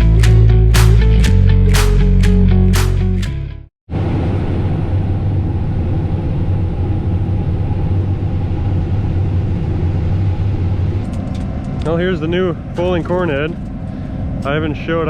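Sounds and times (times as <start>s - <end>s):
combine harvester engine drone: 4.0s - 15.0s.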